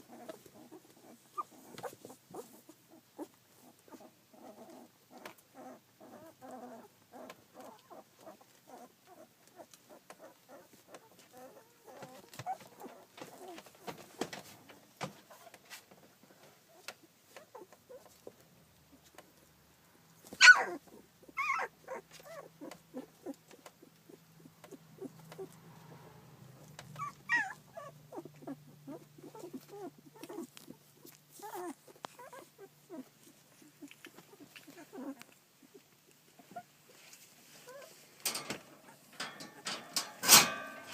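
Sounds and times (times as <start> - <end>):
puppies squeaking and grunting: 0.0 - 15.4, 16.4 - 19.5, 20.2 - 40.6
puppy high squeal: 20.4 - 20.8, 21.4 - 21.7, 27.0 - 28.3.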